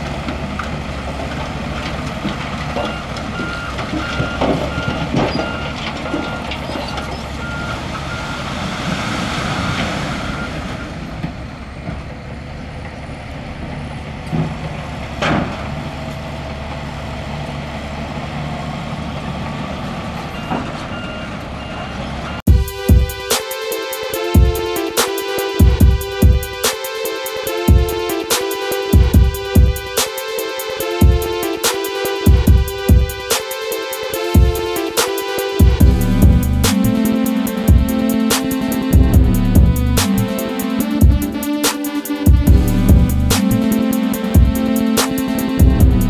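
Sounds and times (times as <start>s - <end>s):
diesel construction machine running: 0.0s - 46.0s
reversing alarm beeping: 2.8s - 8.7s, 10.2s - 11.1s, 20.2s - 46.0s.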